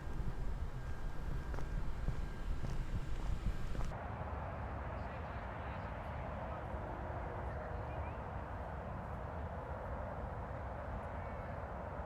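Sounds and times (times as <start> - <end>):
fluttering low rumble: 0.0 - 3.9.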